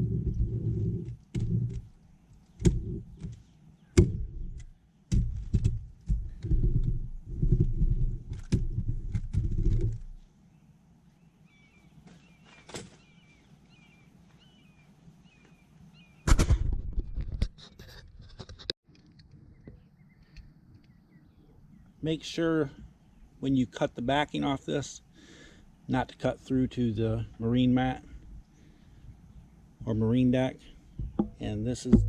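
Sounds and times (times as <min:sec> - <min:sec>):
handling bumps and clicks: 0:01.1 - 0:10.2.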